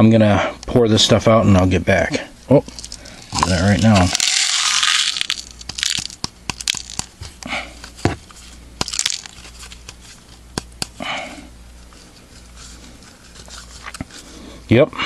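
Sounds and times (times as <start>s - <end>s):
paper crinkling: 2.7s - 11.0s, 11.7s - 14.4s.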